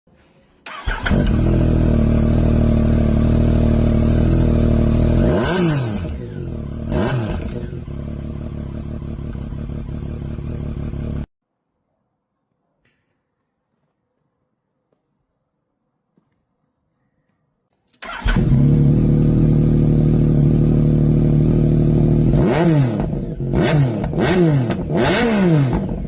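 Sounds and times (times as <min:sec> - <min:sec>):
motorcycle engine idling and revving: 0:00.7 - 0:11.3, 0:18.0 - 0:26.0.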